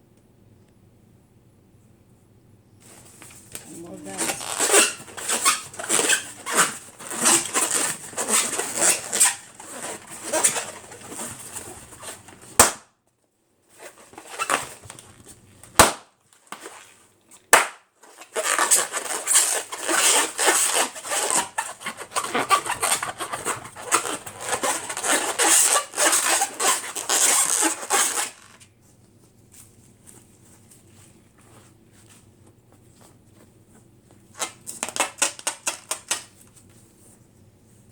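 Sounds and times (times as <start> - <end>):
balloons squeaking and crackling: 2.8 - 12.8, 13.7 - 28.6
balloon pops: 12.5 - 12.9, 15.7 - 16.1, 17.5 - 17.9.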